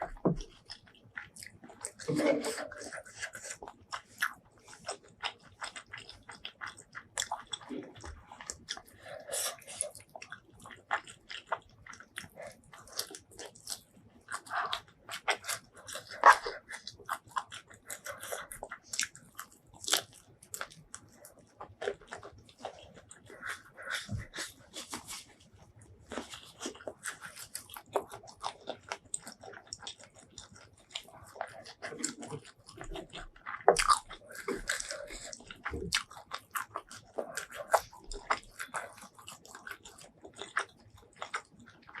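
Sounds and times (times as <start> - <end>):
wet chewing and smacking: 0.0 - 42.0
crunchy bites: 26.1 - 42.0.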